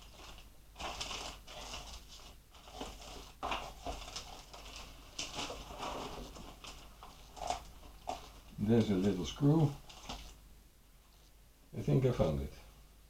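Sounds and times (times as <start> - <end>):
hands rummaging through small parts: 0.0 - 8.5.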